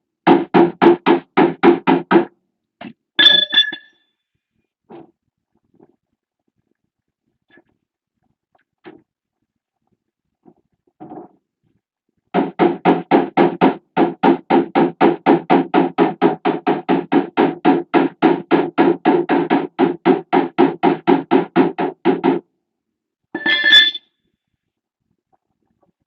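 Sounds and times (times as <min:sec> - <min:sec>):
hammer tapping sheet metal: 0:00.3 - 0:02.3, 0:12.4 - 0:22.4
sharp metallic clang: 0:03.2 - 0:04.0, 0:23.4 - 0:24.0.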